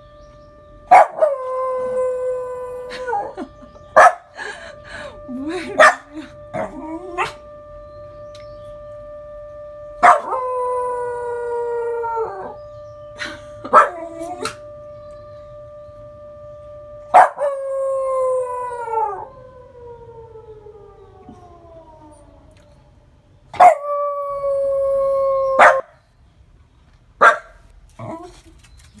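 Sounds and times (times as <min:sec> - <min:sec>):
civil defence siren: 0:00.0 - 0:29.0
dog howling: 0:00.8 - 0:07.6, 0:10.0 - 0:14.8, 0:17.1 - 0:23.0
dog barking: 0:04.0 - 0:04.4, 0:05.7 - 0:06.3, 0:13.2 - 0:14.0, 0:25.6 - 0:25.9, 0:27.2 - 0:27.6.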